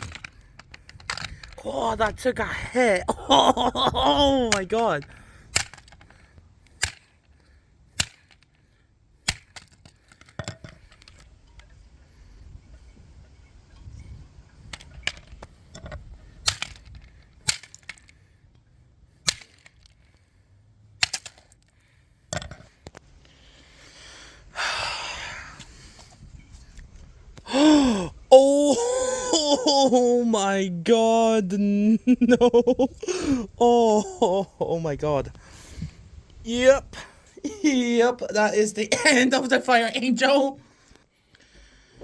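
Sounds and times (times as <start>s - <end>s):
plastic casing cracking under blows: 0.0s - 2.2s, 4.3s - 11.3s, 16.3s - 18.2s.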